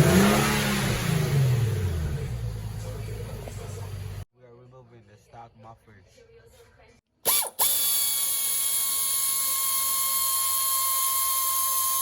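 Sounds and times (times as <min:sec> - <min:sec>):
power ratchet whining: 0:07.3 - 0:12.0.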